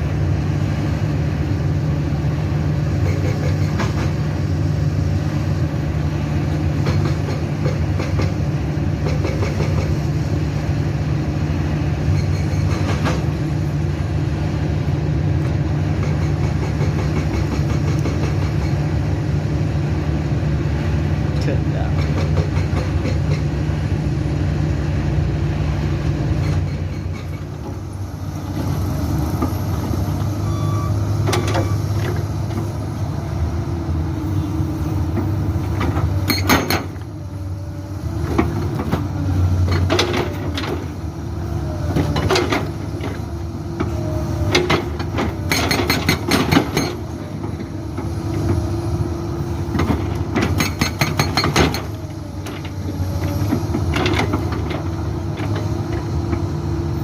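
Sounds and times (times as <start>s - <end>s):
excavator diesel engine running: 0.0s - 57.0s
hydraulic breaker hammering rock: 35.8s - 37.0s, 44.5s - 47.1s, 49.7s - 52.0s.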